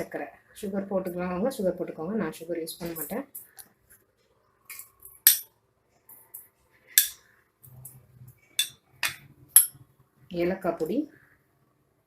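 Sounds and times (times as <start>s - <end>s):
metal spoon clinking on metal basin: 5.0s - 5.5s, 7.0s - 7.2s, 8.6s - 9.8s.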